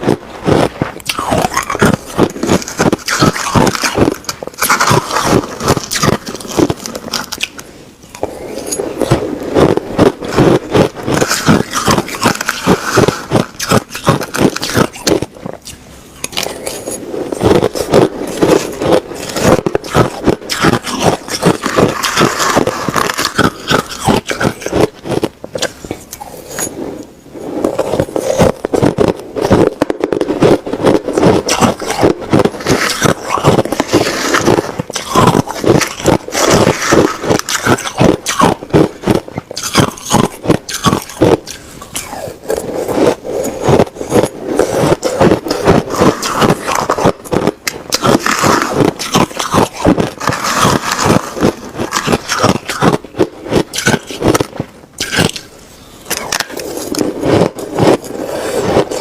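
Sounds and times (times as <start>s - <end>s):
person crunching ice: 0.0s - 59.0s.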